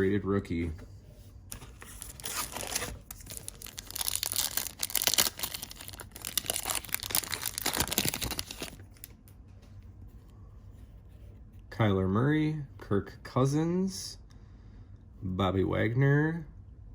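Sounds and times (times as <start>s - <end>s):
foil wrapper tearing and crinkling: 1.5s - 9.1s.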